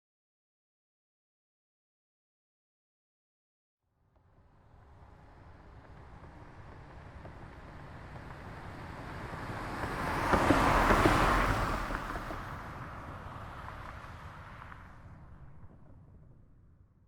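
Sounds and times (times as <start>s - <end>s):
car driving past: 4.2s - 16.6s.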